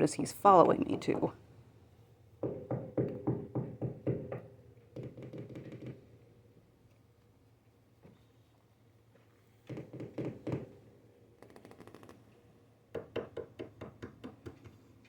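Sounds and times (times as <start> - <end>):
hand knocking on furniture: 2.4 - 4.4.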